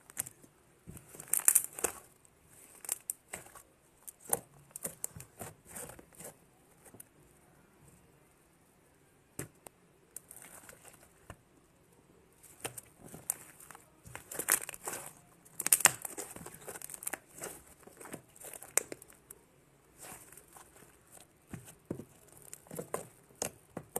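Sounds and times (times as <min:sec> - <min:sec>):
slime clicking and crackling: 0:00.0 - 0:06.4, 0:12.4 - 0:19.4, 0:20.0 - 0:23.9.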